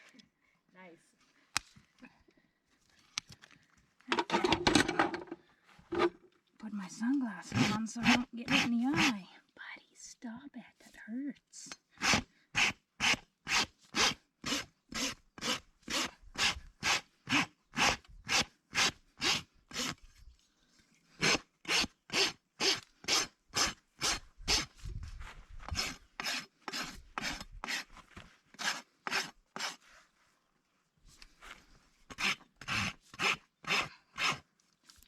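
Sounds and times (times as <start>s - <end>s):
rasp filing hoof: 7.5s - 9.1s, 12.0s - 20.0s, 21.2s - 24.9s, 25.6s - 29.9s, 32.1s - 34.5s.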